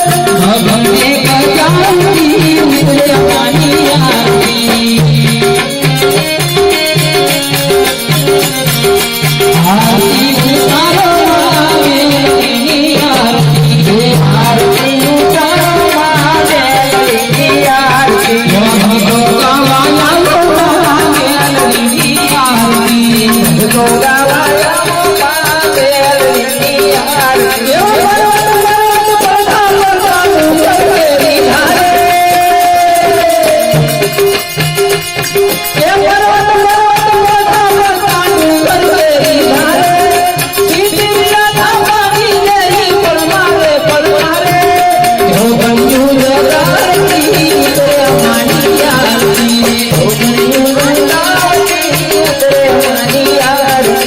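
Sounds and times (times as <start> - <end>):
instrumental accompaniment: 0.0 - 54.0
person singing a melody: 0.0 - 54.0
steady percussion beat: 0.0 - 54.0.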